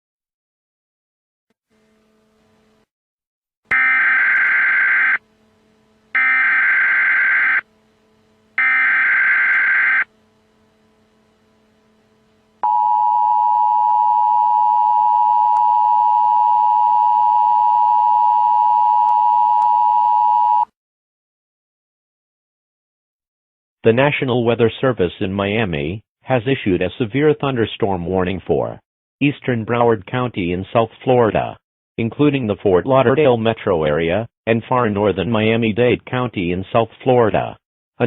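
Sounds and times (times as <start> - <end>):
two-tone alert signal: 3.7 - 5.2, 8.6 - 10.1.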